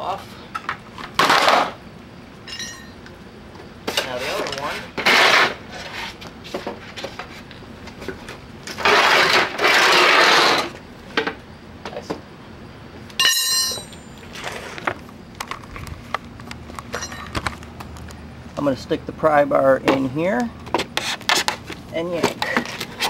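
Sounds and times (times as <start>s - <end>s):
ringing metal clang: 2.4s - 3.0s, 13.2s - 14.1s, 16.9s - 17.3s
pry bars scraping sheet metal: 3.9s - 6.2s, 8.7s - 10.8s.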